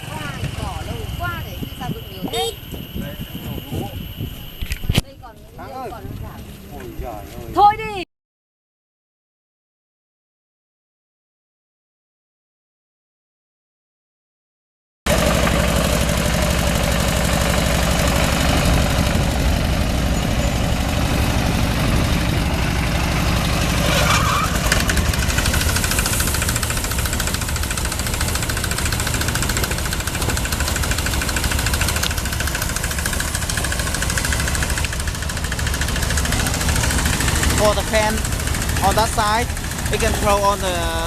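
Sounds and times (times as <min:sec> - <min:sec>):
threshing drum rattling and whirring: 0:00.0 - 0:06.4, 0:15.1 - 0:41.0
engine chugging: 0:00.0 - 0:07.8, 0:15.1 - 0:41.0.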